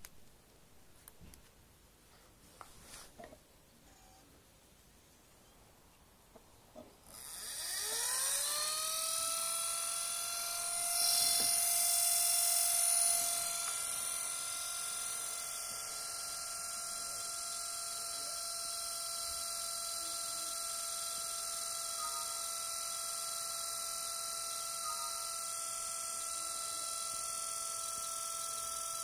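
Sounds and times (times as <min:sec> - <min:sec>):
laptop cooling fan whining: 0:07.0 - 0:29.0.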